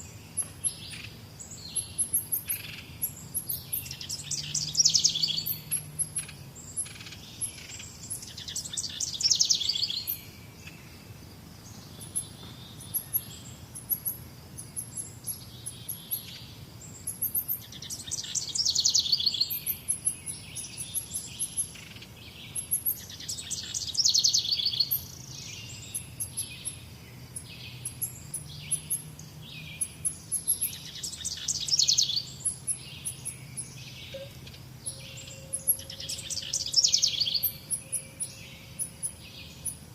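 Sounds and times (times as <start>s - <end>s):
birds chirping: 0.0s - 39.9s.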